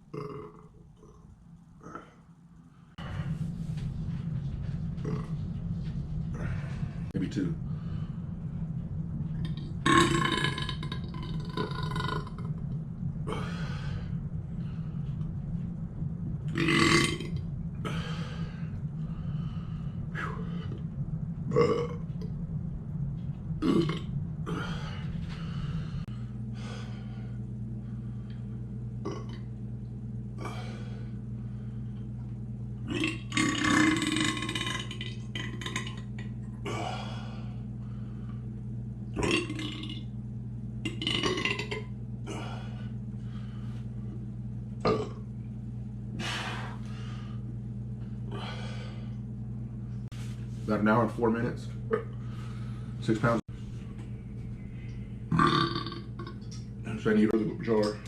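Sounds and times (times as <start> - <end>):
steady low hum: 0.0 - 58.0
man burping: 0.1 - 1.1, 23.6 - 24.7, 29.1 - 29.4, 44.9 - 45.2, 55.3 - 56.3.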